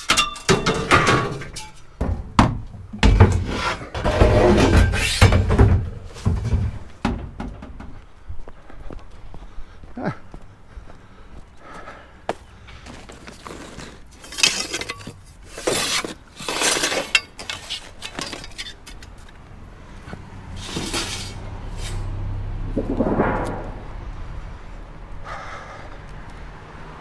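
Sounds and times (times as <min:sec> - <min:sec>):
metal and glass junk clattering: 0:00.0 - 0:08.0, 0:13.4 - 0:19.2, 0:20.6 - 0:23.6.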